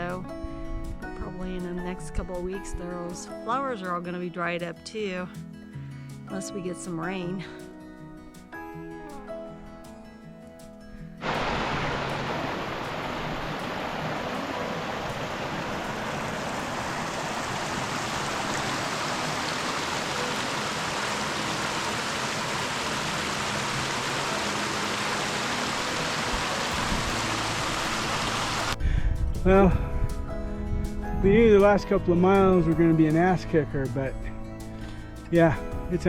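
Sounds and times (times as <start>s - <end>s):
flowing stream water: 11.2s - 28.8s.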